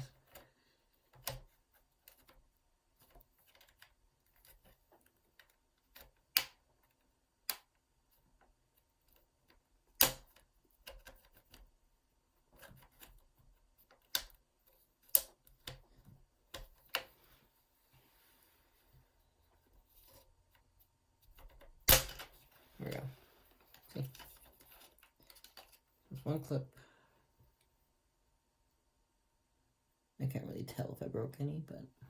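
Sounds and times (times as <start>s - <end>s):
plastic clips clicking and snapping: 5.3s - 7.8s, 9.1s - 11.6s.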